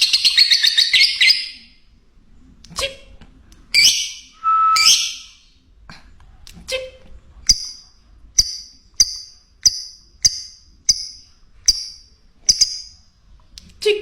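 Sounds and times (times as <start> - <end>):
bird chirping: 0.0 - 1.8, 3.8 - 5.5, 8.4 - 13.1.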